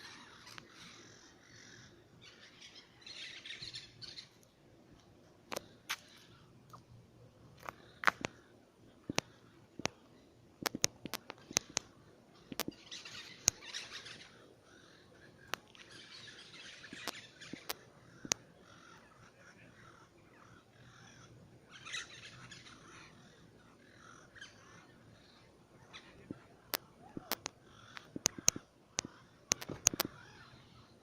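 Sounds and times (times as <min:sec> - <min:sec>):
birds chattering calls: 0:00.0 - 0:04.5, 0:07.6 - 0:31.0
sharp clicks: 0:09.1 - 0:10.0, 0:10.6 - 0:11.9, 0:12.5 - 0:12.7, 0:16.9 - 0:18.4, 0:26.7 - 0:30.2.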